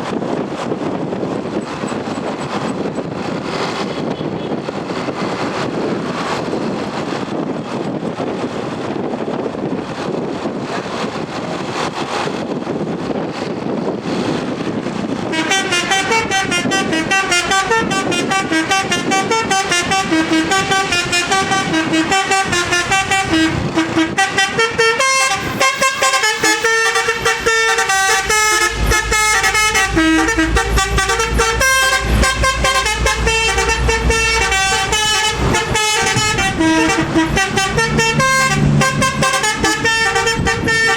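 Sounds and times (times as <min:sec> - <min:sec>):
wind and road noise: 0:00.0 - 0:40.9
bus horn melody: 0:15.2 - 0:40.9.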